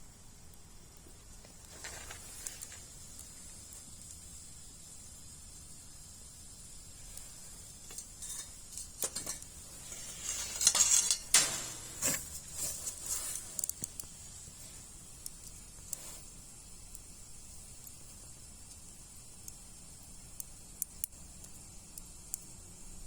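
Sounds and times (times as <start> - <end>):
wood fire crackling: 0.0 - 23.0
sharp knocks and clinks: 7.9 - 12.5.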